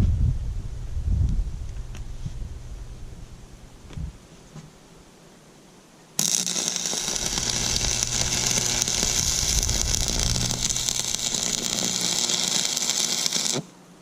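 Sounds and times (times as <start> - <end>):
welding arc crackling: 6.2 - 13.7
welder low hum: 6.2 - 13.8.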